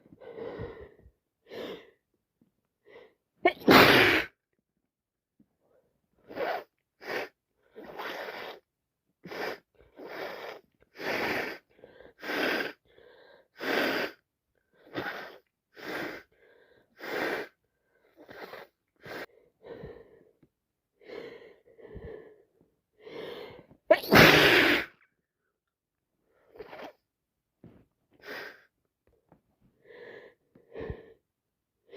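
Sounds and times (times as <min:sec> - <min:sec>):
woman sneezing: 0:03.4 - 0:04.4, 0:23.9 - 0:25.0
woman wheezy breathing: 0:21.0 - 0:25.1, 0:28.1 - 0:28.8.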